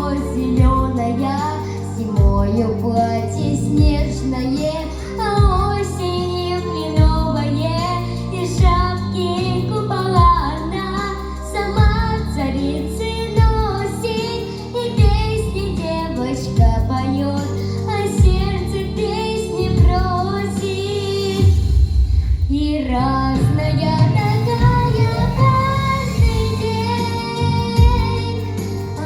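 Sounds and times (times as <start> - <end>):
backing track: 0.0 - 29.0
girl singing pop song: 0.0 - 29.0
kick drum beating: 0.6 - 0.9, 2.2 - 2.6, 3.8 - 4.1, 5.4 - 5.7, 8.6 - 8.9, 10.2 - 10.5, 13.4 - 13.7, 15.0 - 15.4, 16.6 - 16.9, 27.8 - 28.1.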